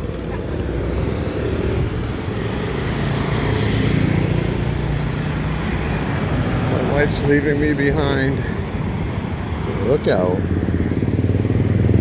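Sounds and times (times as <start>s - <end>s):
traffic noise: 0.0s - 12.0s
vehicle engine running close: 0.0s - 12.0s.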